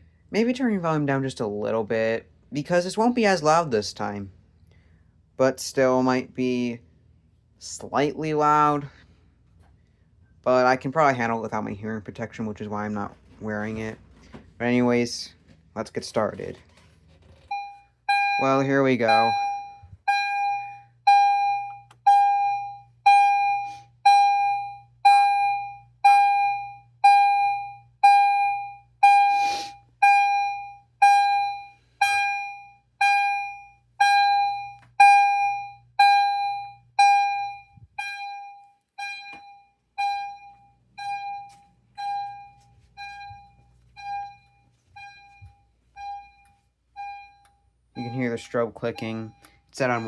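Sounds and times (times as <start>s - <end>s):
struck chime tone: 47.0s - 50.0s.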